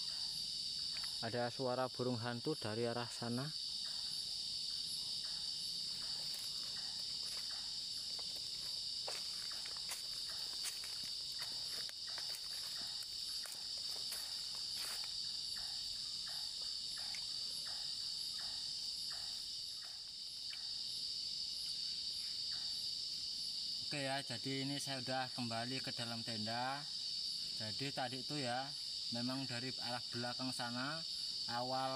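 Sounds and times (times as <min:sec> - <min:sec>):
crickets chirping: 0:00.0 - 0:31.9
footsteps walking: 0:06.0 - 0:15.3.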